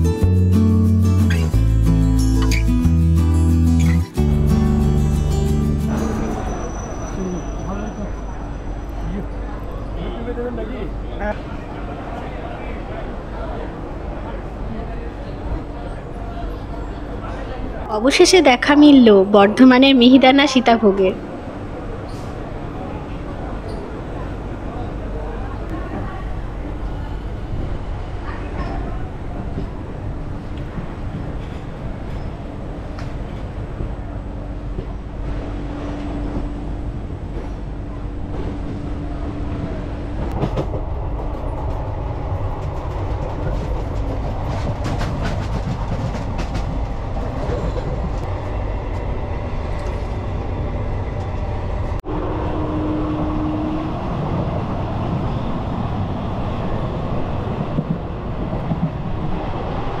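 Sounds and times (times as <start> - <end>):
train coach rumbling and rattling: 0.0 - 60.0
wheels clickety-clack: 40.2 - 48.3.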